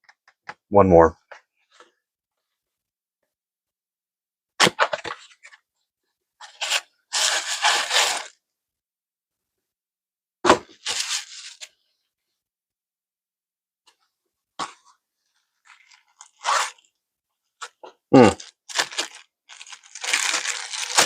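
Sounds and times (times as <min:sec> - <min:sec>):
paper wrapping rustling: 0:06.4 - 0:08.4, 0:15.6 - 0:16.9, 0:18.4 - 0:21.0
packaging sharp cracks: 0:17.6 - 0:21.0.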